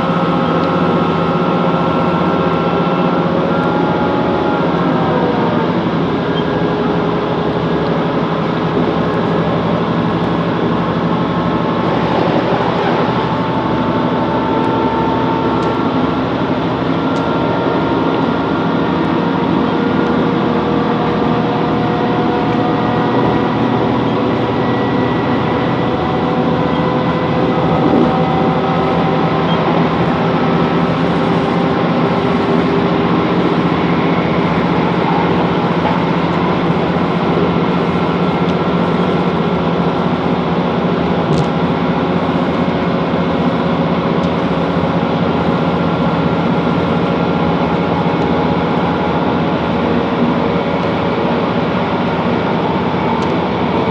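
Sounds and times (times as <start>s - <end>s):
train engine drone: 0.0s - 53.9s
wheel and rail rumble: 0.0s - 53.9s
faint drifting tones: 22.3s - 48.1s.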